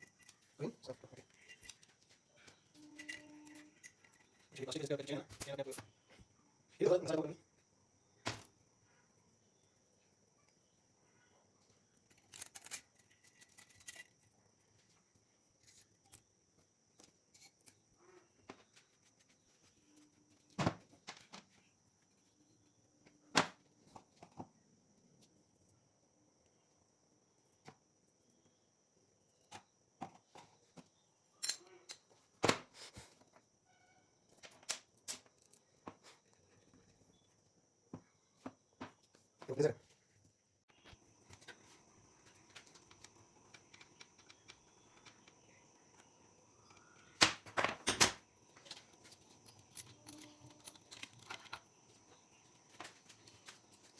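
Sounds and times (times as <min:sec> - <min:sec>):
clicks of tools and metal parts: 0:00.0 - 0:04.5, 0:05.1 - 0:05.9, 0:12.1 - 0:14.3, 0:31.4 - 0:32.7, 0:42.4 - 0:46.1, 0:46.7 - 0:52.1.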